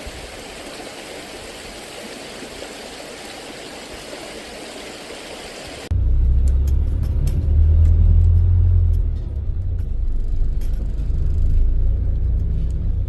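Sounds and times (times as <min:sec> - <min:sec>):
car driving rumble: 0:05.9 - 0:13.0.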